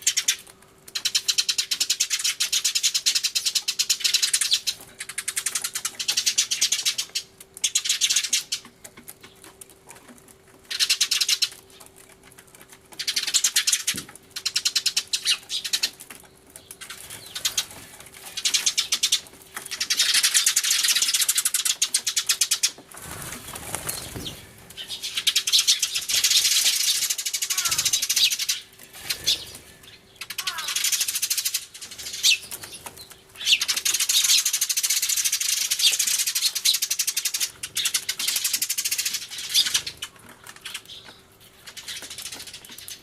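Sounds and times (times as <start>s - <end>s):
sparrows chirping: 0.0s - 43.0s
low rustle of wingbeats: 22.8s - 24.8s.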